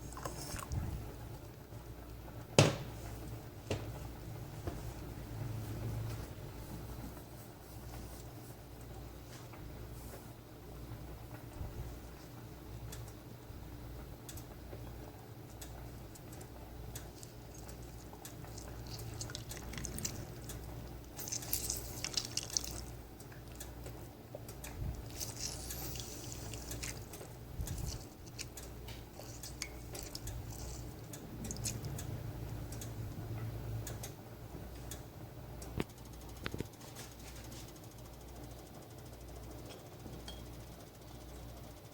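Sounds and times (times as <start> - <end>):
low steady hum: 0.0 - 41.9.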